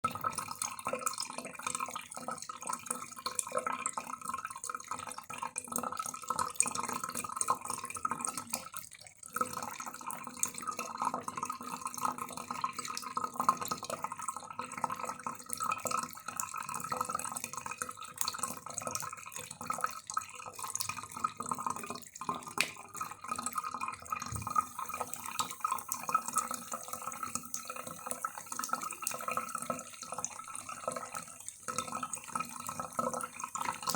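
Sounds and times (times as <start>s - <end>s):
cat lapping water: 17.4s - 33.9s
running water: 18.2s - 33.9s.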